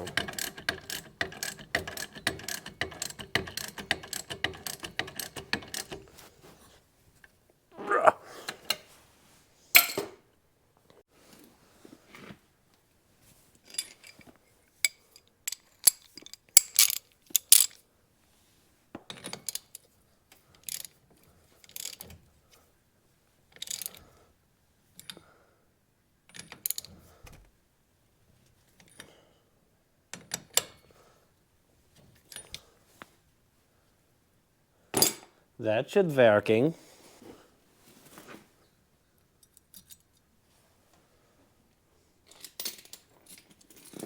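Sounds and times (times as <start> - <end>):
hand ratchet clicking: 0.0 - 6.2
metal tools clinking: 0.0 - 6.2, 13.7 - 17.7, 42.3 - 44.0.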